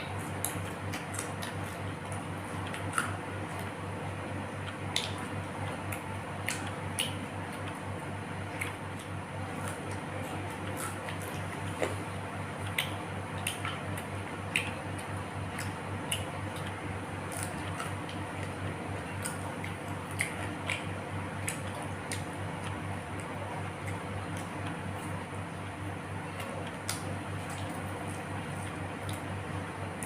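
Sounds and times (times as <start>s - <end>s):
steady low hum: 0.0s - 30.0s
wet chewing: 0.2s - 3.8s, 4.6s - 25.6s, 26.2s - 30.0s
mouth clicks and smacks: 0.4s - 3.7s, 5.9s - 7.8s, 12.6s - 24.6s.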